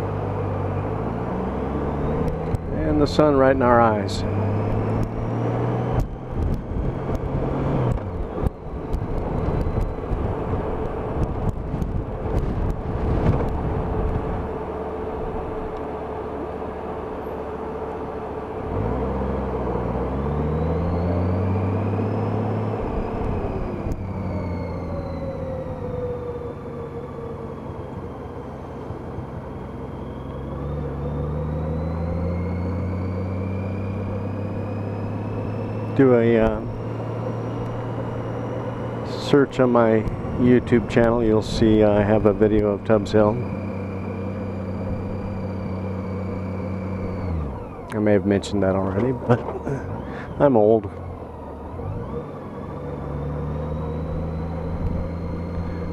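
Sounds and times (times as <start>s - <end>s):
motorcycle engine accelerating: 0.0s - 55.9s
wind buffeting: 6.1s - 14.6s.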